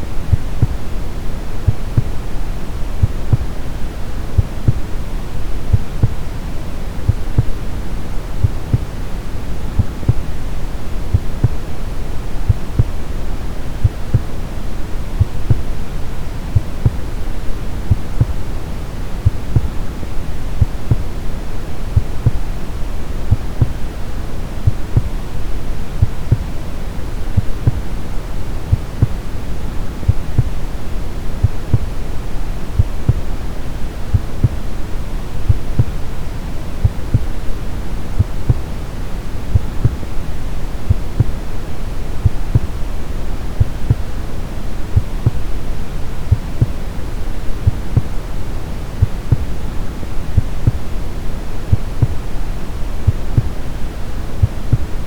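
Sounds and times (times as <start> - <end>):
heartbeat: 0.2 - 0.9, 1.6 - 2.3, 2.9 - 3.6, 4.3 - 4.9, 5.7 - 6.3, 7.1 - 7.8, 8.4 - 9.0, 9.7 - 10.4, 11.1 - 11.7, 12.4 - 13.0, 13.8 - 14.4, 15.2 - 15.8, 16.5 - 17.1, 17.7 - 18.5, 19.2 - 19.9, 20.6 - 21.2, 21.8 - 22.5, 23.3 - 23.8, 24.6 - 25.2, 26.0 - 26.5, 27.3 - 28.0, 28.7 - 29.3, 30.0 - 30.6, 31.4 - 32.0, 32.8 - 33.4, 34.1 - 34.8, 35.5 - 36.0, 36.8 - 37.4, 38.2 - 38.7, 39.5 - 40.1, 40.9 - 41.4, 42.2 - 42.8, 43.6 - 44.2, 44.9 - 45.5, 46.3 - 46.8, 47.6 - 48.2, 49.0 - 49.6, 50.4 - 51.0, 51.7 - 52.3, 53.0 - 53.6, 54.4 - 55.0.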